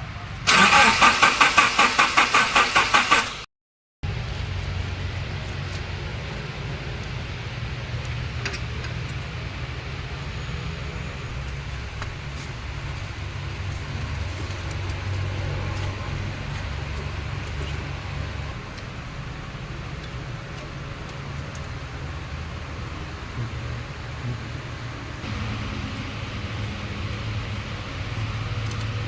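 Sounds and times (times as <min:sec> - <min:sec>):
engine cranking on starter: 0:00.4 - 0:03.5.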